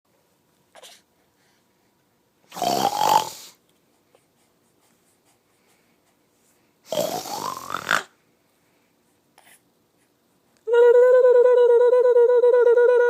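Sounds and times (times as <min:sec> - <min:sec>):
person snoring loudly: 0:02.5 - 0:03.6, 0:06.9 - 0:08.1.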